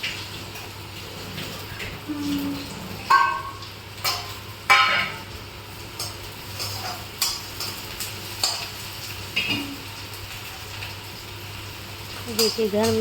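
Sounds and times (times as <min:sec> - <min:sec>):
spoon scraping a pan: 0:01.0 - 0:05.3, 0:06.0 - 0:09.8
spoon tapping a pan: 0:03.1 - 0:05.3, 0:12.3 - 0:13.0.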